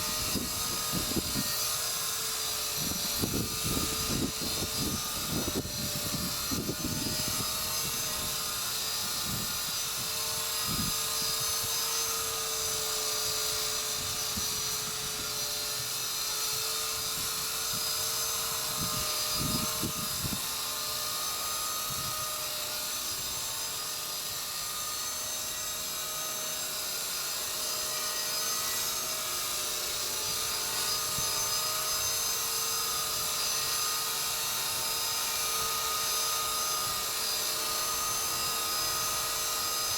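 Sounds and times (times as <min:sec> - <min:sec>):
wind buffeting microphone: 0:00.0 - 0:01.6, 0:02.7 - 0:11.7, 0:16.9 - 0:20.5, 0:21.8 - 0:22.4
toy helicopter rotor whine: 0:00.0 - 0:39.9.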